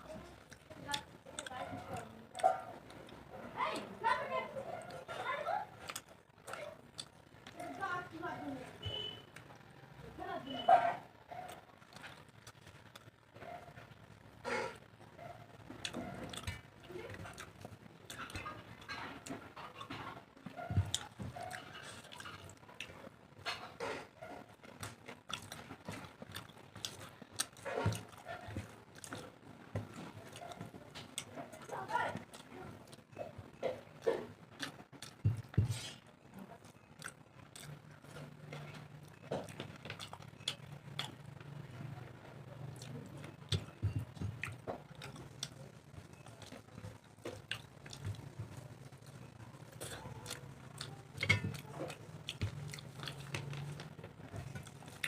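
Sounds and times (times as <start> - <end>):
person chewing and lip-smacking: 5.8 - 7.8, 15.8 - 23.0, 24.6 - 29.4, 30.0 - 35.9, 36.6 - 41.5, 42.7 - 55.0.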